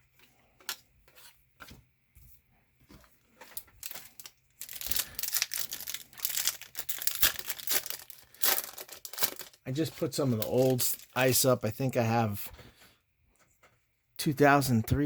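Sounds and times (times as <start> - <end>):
foil wrapper crinkling and tearing: 3.4 - 11.4.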